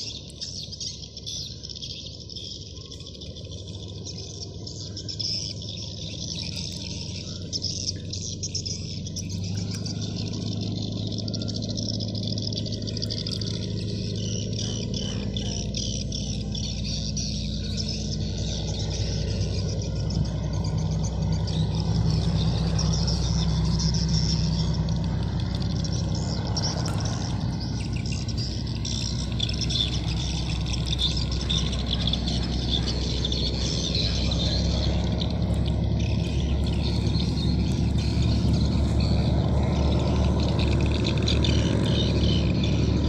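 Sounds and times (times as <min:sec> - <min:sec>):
ferry engine drone: 0:00.0 - 0:43.0.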